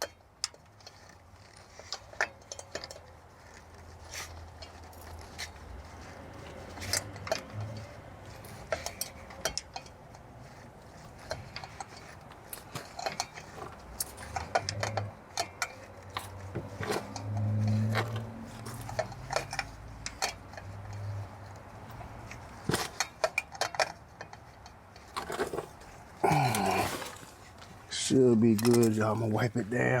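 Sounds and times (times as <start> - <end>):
metal tools clinking: 0.0 - 30.0.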